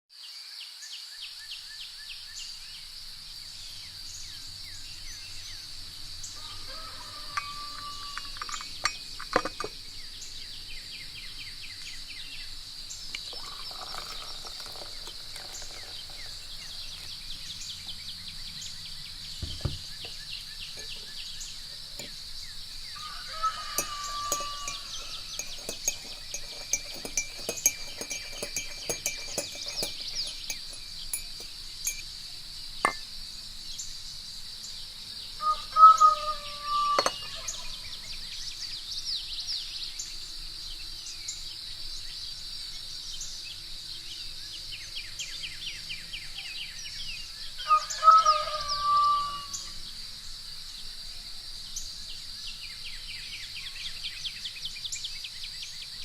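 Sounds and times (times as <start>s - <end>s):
crickets chirring: 1.1s - 56.0s
birds chirping: 1.6s - 34.2s, 34.8s - 40.2s
dull low thump: 19.4s - 20.2s
light clicks and clinks: 23.7s - 32.2s.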